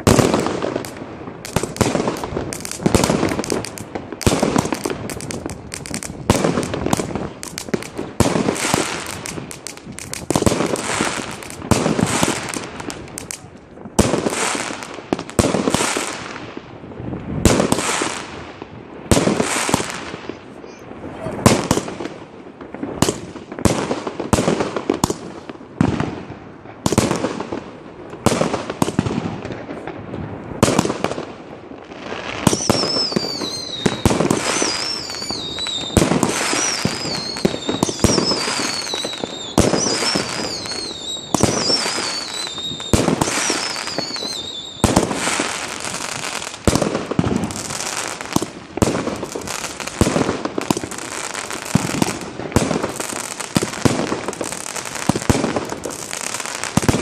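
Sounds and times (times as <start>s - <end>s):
crackling fireworks: 0.0s - 57.0s
fireworks bangs: 0.0s - 57.0s
falling wavering whistles: 34.6s - 44.9s.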